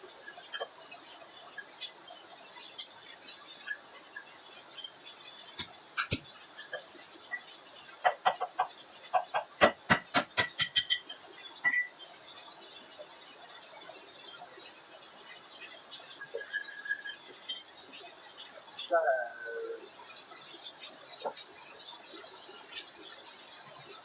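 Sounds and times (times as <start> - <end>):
chicken clucking: 8.0 - 10.3
sharp knocks: 9.6 - 10.8.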